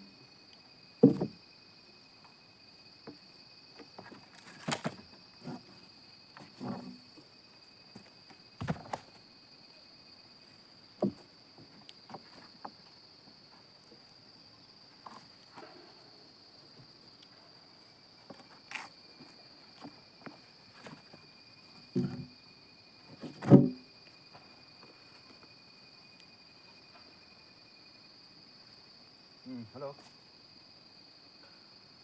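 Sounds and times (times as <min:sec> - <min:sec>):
short knocks and thumps: 0:01.0 - 0:01.4, 0:04.0 - 0:05.8, 0:06.4 - 0:07.0, 0:08.0 - 0:09.2, 0:11.0 - 0:12.8, 0:21.9 - 0:22.3, 0:23.2 - 0:23.8.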